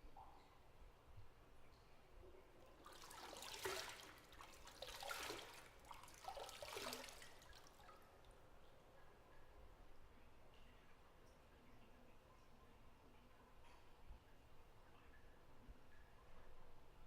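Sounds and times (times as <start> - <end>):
water dripping: 0.0 - 17.0
bathwater sloshing and splashing: 2.6 - 8.1.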